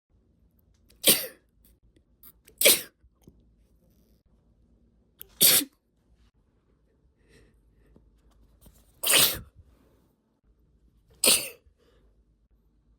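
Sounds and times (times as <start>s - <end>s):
woman sneezing: 2.6s - 2.9s, 5.3s - 5.7s, 9.0s - 9.5s, 11.2s - 11.6s.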